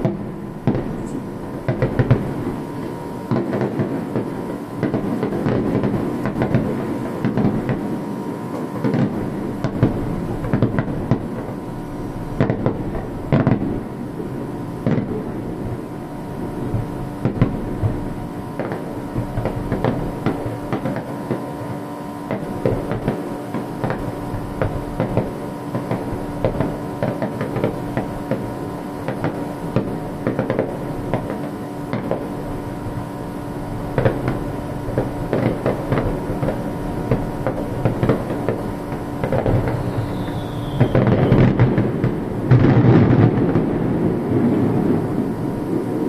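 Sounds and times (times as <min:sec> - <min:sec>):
fireworks crackling and popping: 0:00.0 - 0:46.0
steady hum: 0:00.0 - 0:46.0
firework whistle sliding down: 0:39.6 - 0:41.6.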